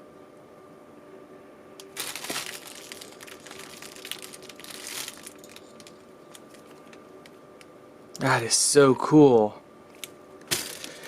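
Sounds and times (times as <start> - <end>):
faint steady hum: 0.0 - 11.0
plastic packaging crinkling: 1.8 - 7.1.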